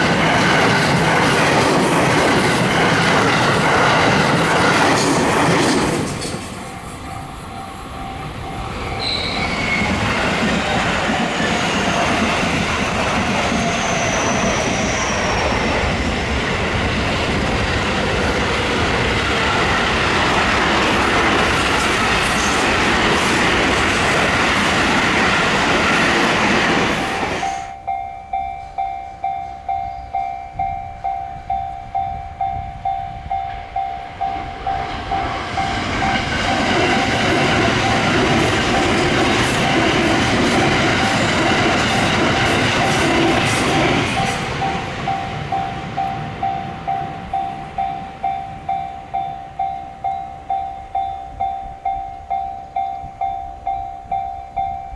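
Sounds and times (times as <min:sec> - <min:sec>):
crossing warning bell ringing: 0:00.0 - 0:54.9
train wheels rumbling on rails: 0:00.0 - 0:54.9
train wheel squeal: 0:02.7 - 0:16.7, 0:26.3 - 0:54.9.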